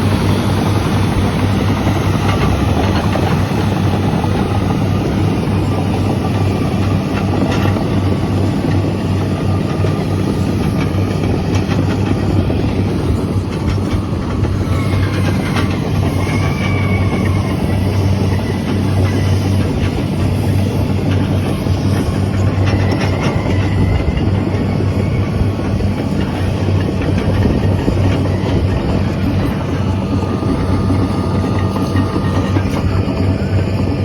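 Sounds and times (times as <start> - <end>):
continuous clatter with knocks: 0.0 - 34.0
heavy diesel engines running: 0.0 - 34.0.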